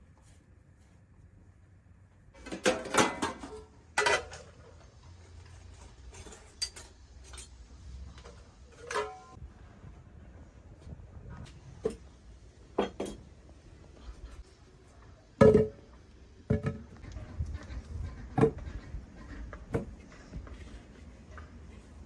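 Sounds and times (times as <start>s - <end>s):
metal pots and dishes clattering: 2.4s - 4.8s, 6.0s - 7.6s, 8.2s - 9.4s, 12.8s - 13.3s.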